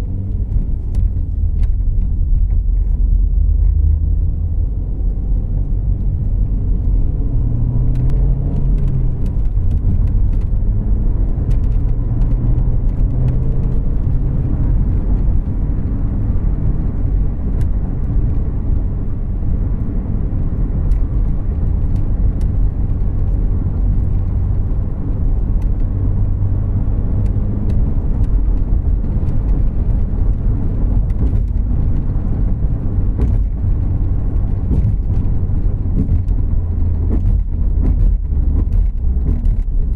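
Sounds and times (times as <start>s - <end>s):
engine and road noise in car: 0.0s - 39.9s
faint light ticks: 7.9s - 10.6s.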